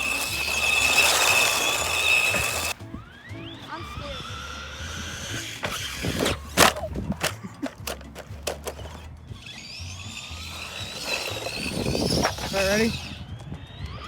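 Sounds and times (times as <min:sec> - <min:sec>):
toy car clattering on stairs: 0:00.0 - 0:02.8, 0:05.6 - 0:09.1, 0:10.1 - 0:13.1
faint electric motor whine: 0:00.0 - 0:06.5, 0:08.7 - 0:14.0.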